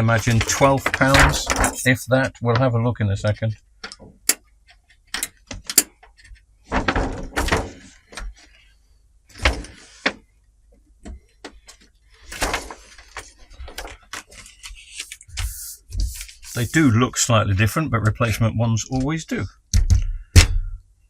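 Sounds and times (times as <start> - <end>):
scraping of parts: 0.0 - 2.0
clicks and knocks of parts: 0.1 - 8.5.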